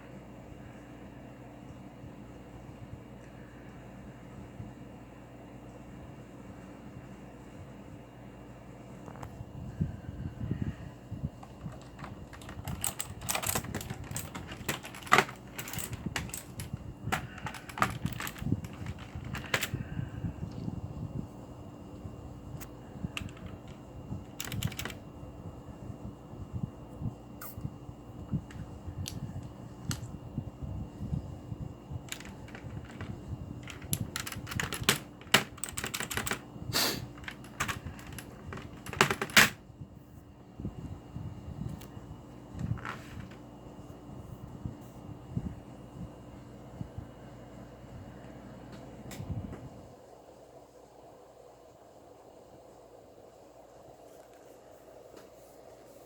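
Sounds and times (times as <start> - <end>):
mechanical keyboard typing: 11.4 - 19.8, 23.2 - 25.0, 32.1 - 36.4, 37.2 - 39.6.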